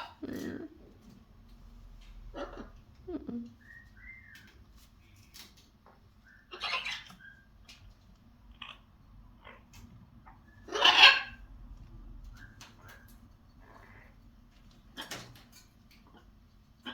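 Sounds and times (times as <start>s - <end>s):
parrot squawking: 0.0s - 0.8s, 2.2s - 2.8s, 6.2s - 7.5s, 8.5s - 11.5s, 16.0s - 16.9s
parrot whistled chirps: 3.6s - 4.4s.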